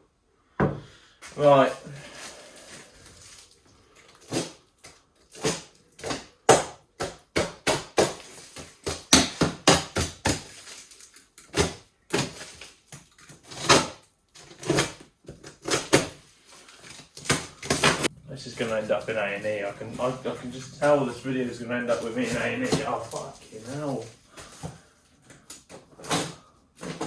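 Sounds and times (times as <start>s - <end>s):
cardboard box being cut and torn: 13.4s - 16.2s, 16.8s - 18.1s.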